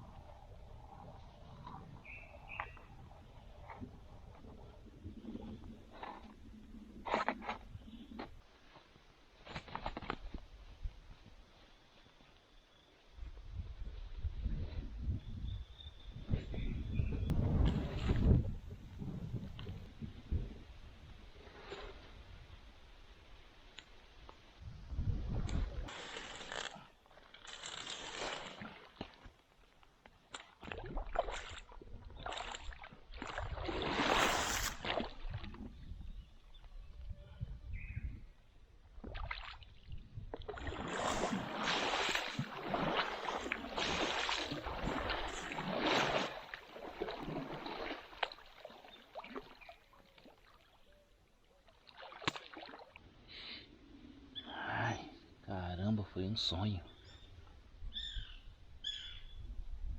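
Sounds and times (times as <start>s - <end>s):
water sloshing and splashing: 17.3s - 19.9s, 25.3s - 35.9s, 39.0s - 53.1s.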